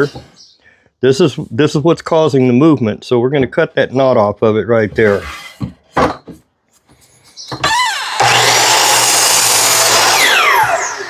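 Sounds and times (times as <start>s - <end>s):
electric saw whine: 7.6s - 11.0s
saw cutting wooden board: 7.6s - 11.0s.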